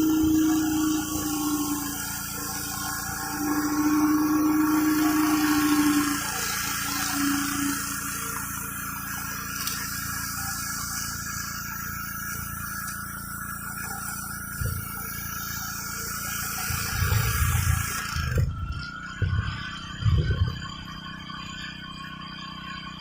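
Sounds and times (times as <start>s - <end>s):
water jet spraying on concrete: 0.0s - 22.1s
pressure washer engine: 0.0s - 23.0s
short low thumps: 18.4s - 20.8s.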